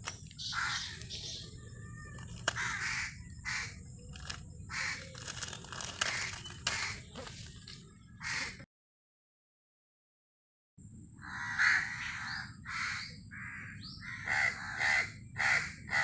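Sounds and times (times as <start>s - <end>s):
crow cawing: 0.4s - 3.8s, 4.7s - 5.2s, 6.0s - 7.1s, 8.2s - 8.6s, 11.2s - 16.0s
sharp clicks: 2.1s - 2.7s, 4.1s - 7.8s.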